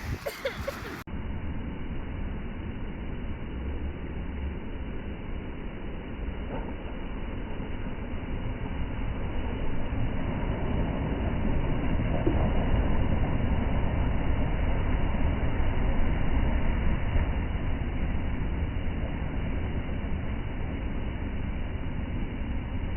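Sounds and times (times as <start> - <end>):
wind buffeting microphone: 0.0 - 1.0.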